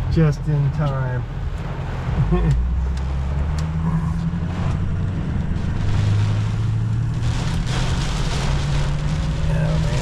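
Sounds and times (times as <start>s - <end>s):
low engine drone: 2.1s - 9.9s.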